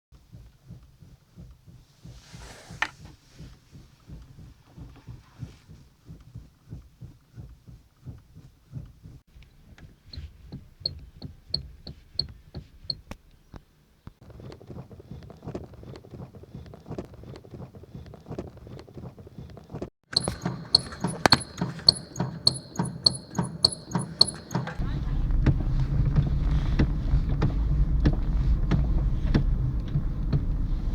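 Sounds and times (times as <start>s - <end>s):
steering clicks and knocks: 0.2s - 30.9s
short high squeak: 20.1s - 24.8s.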